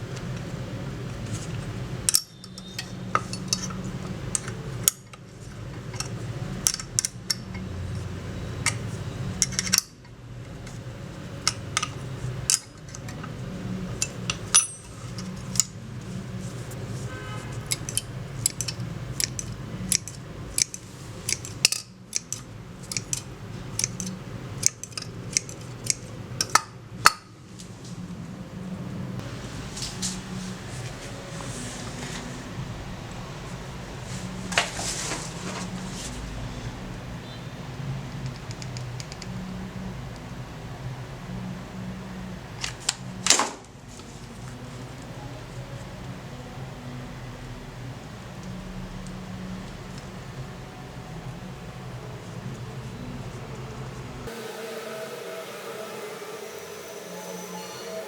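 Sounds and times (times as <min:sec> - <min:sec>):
low steady hum: 0:00.0 - 0:58.0
metal tools clinking and tapping: 0:02.1 - 0:05.2, 0:05.8 - 0:10.0, 0:11.5 - 0:15.8, 0:17.7 - 0:27.2.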